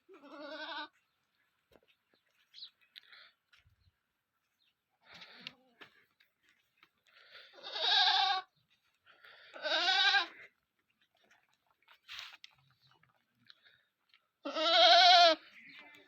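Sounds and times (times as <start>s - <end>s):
goat bleating: 0.0s - 1.0s, 7.4s - 8.6s, 9.5s - 10.5s, 14.4s - 16.0s.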